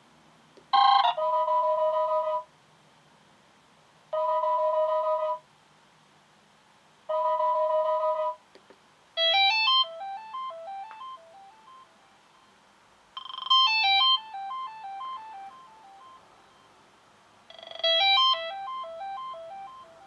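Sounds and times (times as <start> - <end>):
electronic tone chord: 9.2 - 11.9, 13.2 - 16.7, 17.5 - 20.0
ringtone of bright electronic notes: 9.2 - 12.0, 13.2 - 16.7, 17.5 - 20.0.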